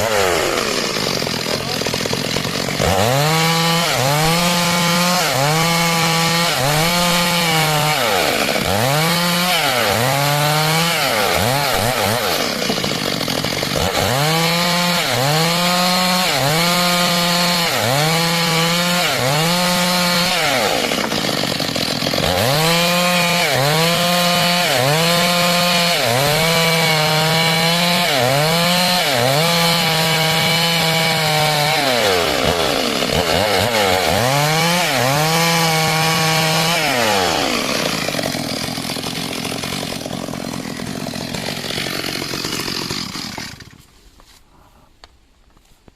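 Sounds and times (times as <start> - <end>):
chainsaw cutting wood: 0.0 - 44.5.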